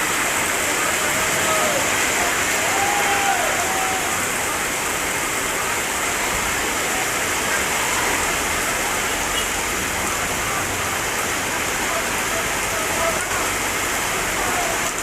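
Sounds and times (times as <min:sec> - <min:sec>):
heavy rain falling: 0:00.0 - 0:15.0.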